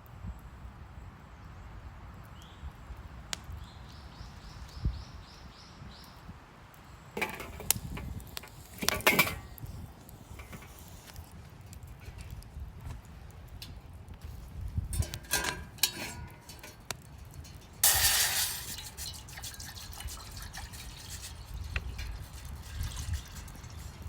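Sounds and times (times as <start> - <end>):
clattering rustling handling noise: 7.2 - 9.7, 15.0 - 18.0.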